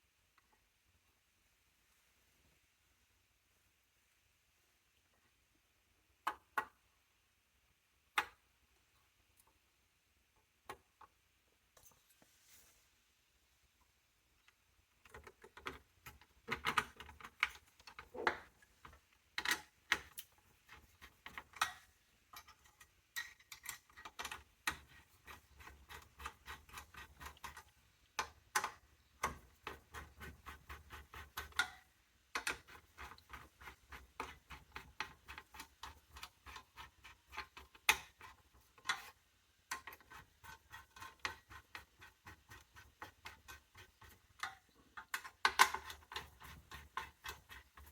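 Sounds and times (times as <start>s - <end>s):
clicks and knocks of computer parts: 15.0s - 20.4s, 44.4s - 46.3s.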